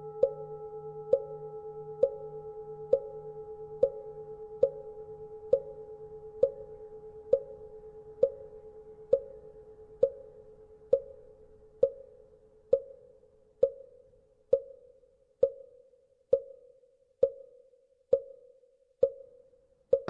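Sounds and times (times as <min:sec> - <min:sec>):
faint steady hum: 0:00.0 - 0:14.3.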